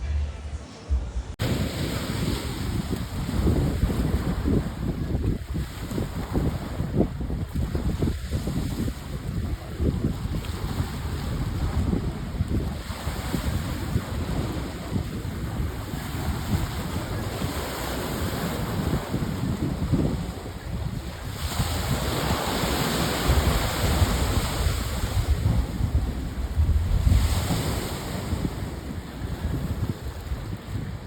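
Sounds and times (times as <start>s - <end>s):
wind buffeting microphone: 1.3s - 31.0s.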